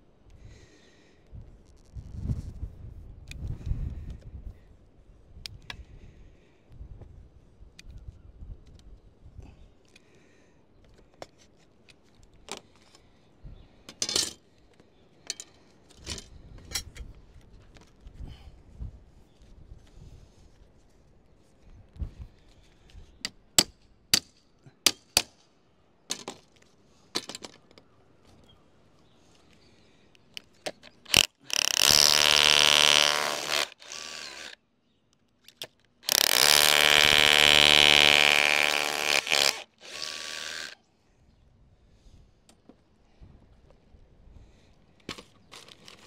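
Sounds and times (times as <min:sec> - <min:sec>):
power tool running: 0:31.1 - 0:34.6, 0:36.1 - 0:40.8.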